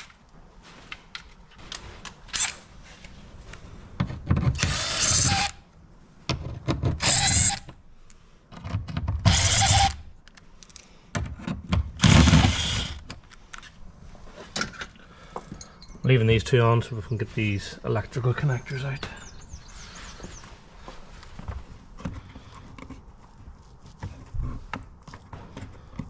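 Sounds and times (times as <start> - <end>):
cordless drill running screws out: 2.3 - 2.6, 4.5 - 5.6, 6.9 - 7.7, 9.2 - 10.0, 12.0 - 13.1.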